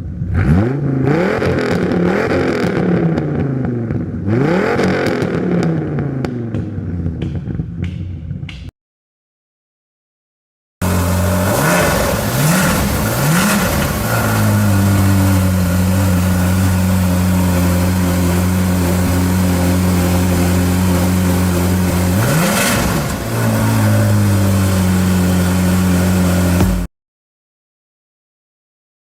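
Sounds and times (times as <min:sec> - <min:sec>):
car engine revving and idling: 0:00.0 - 0:08.0, 0:10.8 - 0:26.9.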